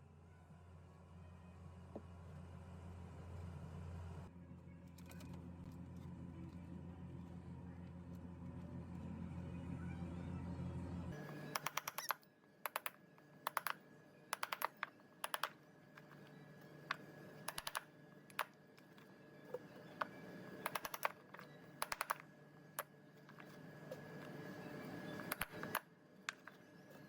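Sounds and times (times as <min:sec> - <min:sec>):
sharp clicks in clusters: 0:11.5 - 0:13.8, 0:14.4 - 0:15.6, 0:17.5 - 0:18.5, 0:20.6 - 0:21.2.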